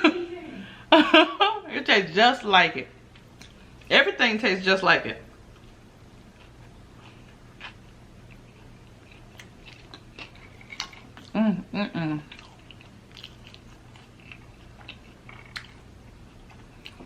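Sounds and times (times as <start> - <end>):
chewing food: 5.4 - 11.4, 12.2 - 17.0
person humming: 11.4 - 12.2.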